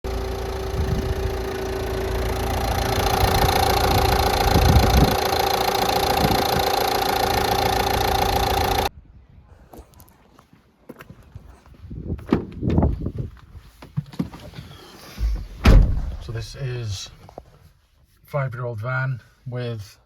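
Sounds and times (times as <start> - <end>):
van engine idling: 0.0 - 8.9.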